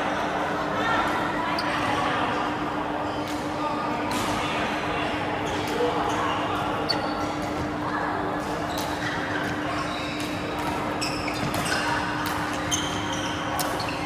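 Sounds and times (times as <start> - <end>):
shoes squeaking on court: 1.5 - 1.9, 8.6 - 14.0.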